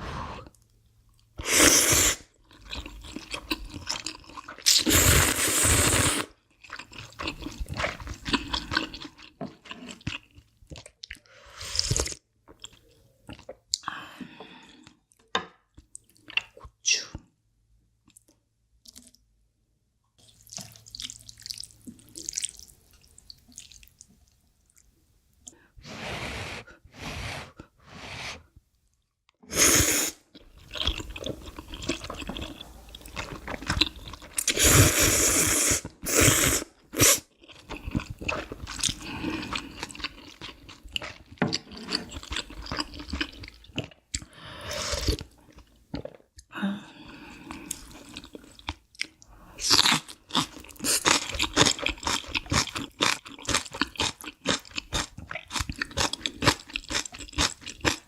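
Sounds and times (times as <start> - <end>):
crunching and chewing food: 2.3 - 4.9, 6.2 - 13.8, 30.2 - 34.6, 36.7 - 44.4, 47.3 - 58.0.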